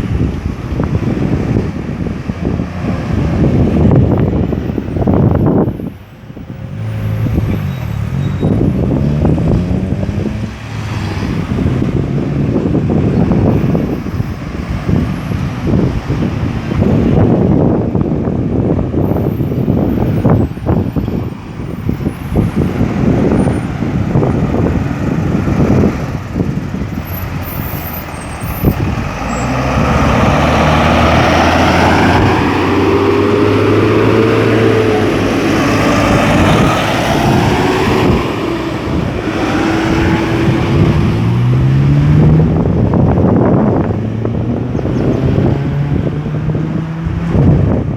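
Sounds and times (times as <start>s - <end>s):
road traffic passing: 0.0s - 47.9s
wind buffeting microphone: 0.0s - 47.9s
engine accelerating: 22.0s - 47.9s.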